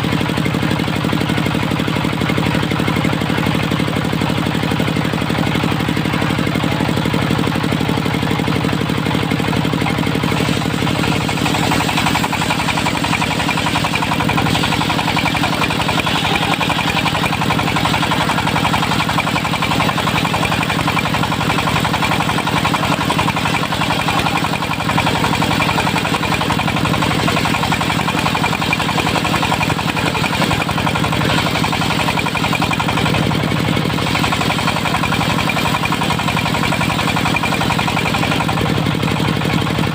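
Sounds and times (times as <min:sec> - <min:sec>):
diesel engine knocking: 0:00.0 - 0:39.9
harsh high-pitched saw noise: 0:09.9 - 0:32.9.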